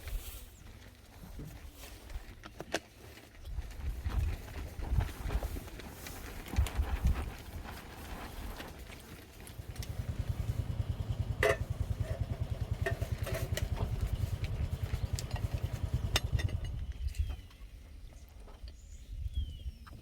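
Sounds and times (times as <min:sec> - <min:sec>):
engine throbbing: 0:09.6 - 0:17.0.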